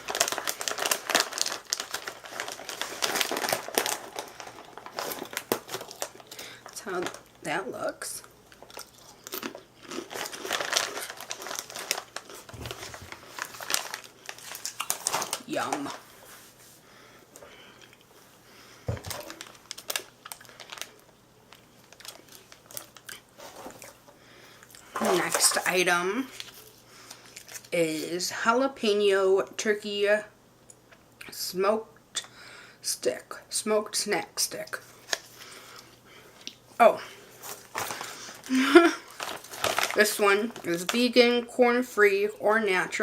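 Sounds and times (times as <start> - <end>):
snack bag crackling: 0.0 - 7.4, 8.2 - 16.0, 18.9 - 27.8, 37.4 - 41.1.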